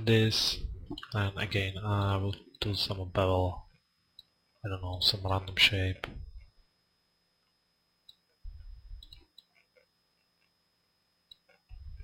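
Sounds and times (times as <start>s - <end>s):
computer mouse clicks: 9.0s - 9.8s.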